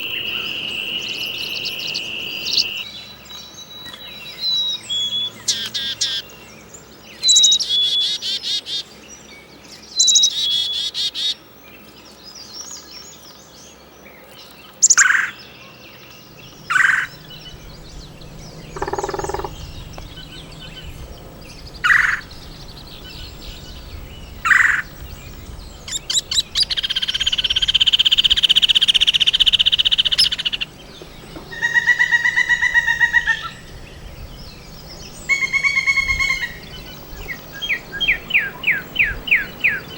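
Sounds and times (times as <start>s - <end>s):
birds singing: 0.0s - 39.9s
buzzy bird trill: 16.4s - 39.9s.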